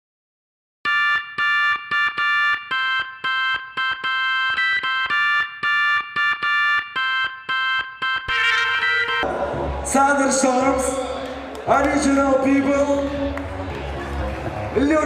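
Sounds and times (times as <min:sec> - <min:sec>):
synthesizer chord stabs: 0:08.3 - 0:15.0.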